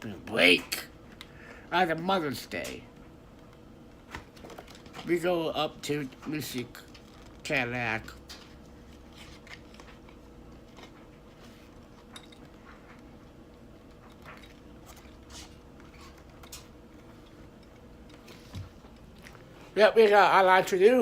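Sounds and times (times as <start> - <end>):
steady low hum: 0.0 - 21.0
faint clicks and handling noises: 1.0 - 5.2, 5.8 - 19.6.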